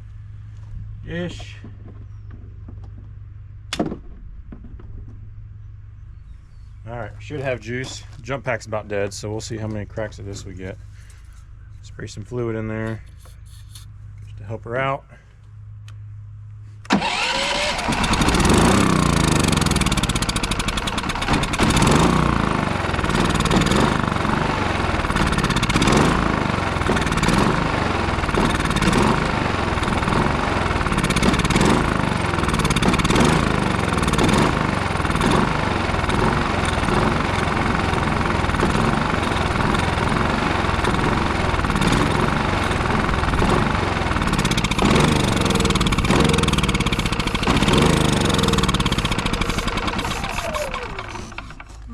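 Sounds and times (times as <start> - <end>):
generator engine running unevenly: 16.8 - 51.9.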